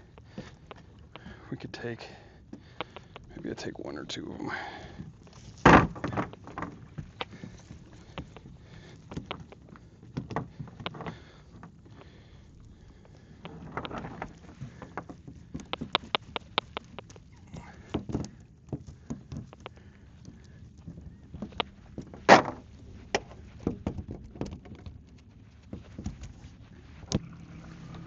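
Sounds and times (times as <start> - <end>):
quick clicks: 2.7 - 3.4
water splashing: 27.2 - 28.0.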